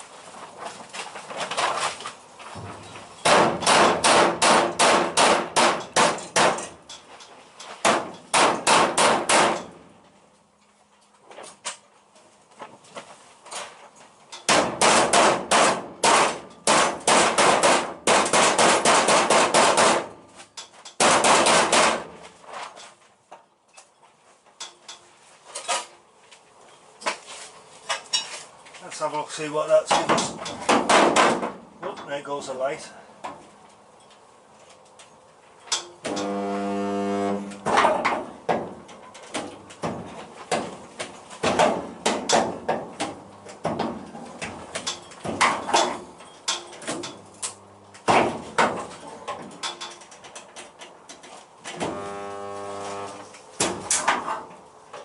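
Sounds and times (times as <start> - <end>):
hammer blows on steel panels: 2.6 - 6.9, 7.8 - 9.8, 14.4 - 20.3, 20.9 - 22.2, 35.8 - 38.8.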